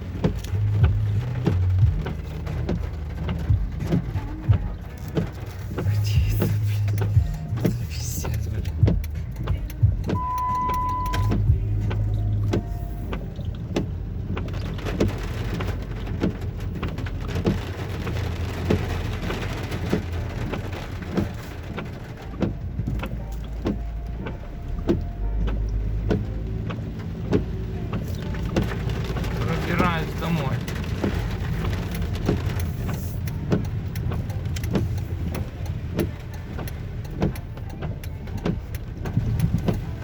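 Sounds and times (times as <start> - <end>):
car engine humming: 0.0 - 40.0
heavy rain striking a car: 0.0 - 40.0
short steady beep: 10.2 - 11.4.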